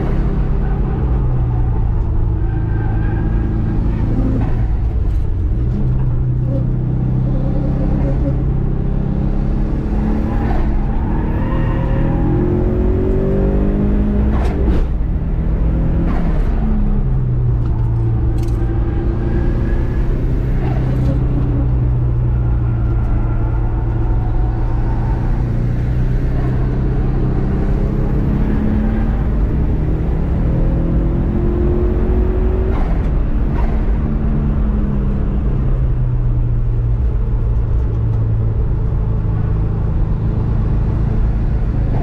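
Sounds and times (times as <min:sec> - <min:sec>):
race car engine revving: 0:06.8 - 0:35.4.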